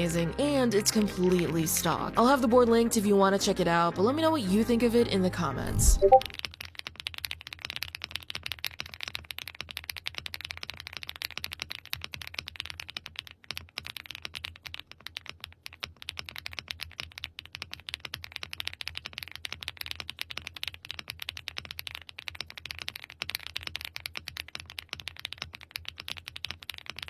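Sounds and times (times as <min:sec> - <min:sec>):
mechanical keyboard typing: 0:05.9 - 0:27.0.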